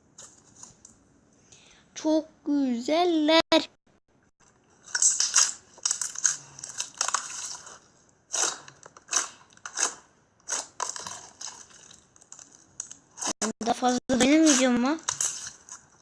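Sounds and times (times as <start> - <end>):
slime crackling and crunching: 4.8 - 13.4, 14.3 - 16.0.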